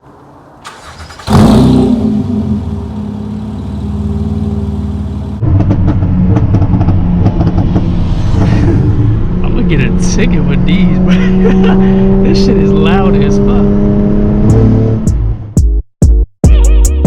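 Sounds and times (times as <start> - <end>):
car engine starting: 0.1 - 15.5
loud car exhaust idling: 1.3 - 5.4.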